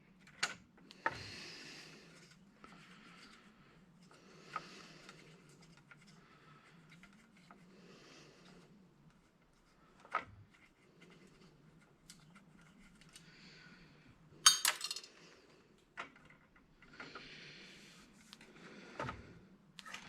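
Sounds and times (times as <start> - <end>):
metal parts clinking: 14.5 - 15.1.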